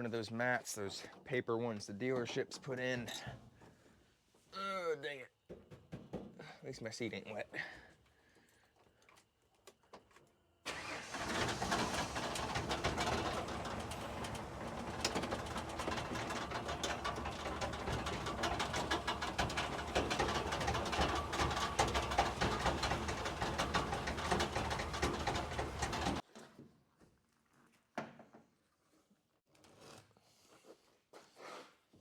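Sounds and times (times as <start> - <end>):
truck engine running: 10.7 - 26.2.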